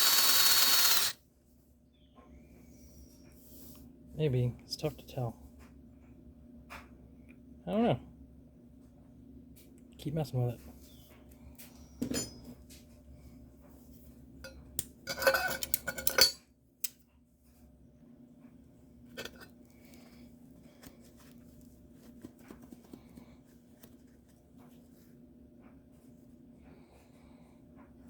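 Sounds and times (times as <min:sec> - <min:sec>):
metal on metal clatter: 0:15.1 - 0:16.4
metal tools clinking: 0:15.1 - 0:16.4.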